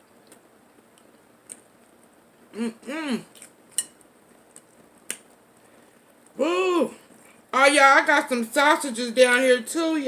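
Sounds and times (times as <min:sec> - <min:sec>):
person humming: 0:02.5 - 0:03.4, 0:06.4 - 0:07.1.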